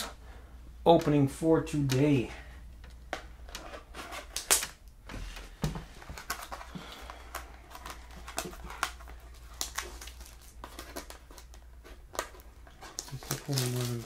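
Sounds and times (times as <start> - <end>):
low steady hum: 0.0 - 14.0
plastic wrapping crinkling: 5.9 - 14.0.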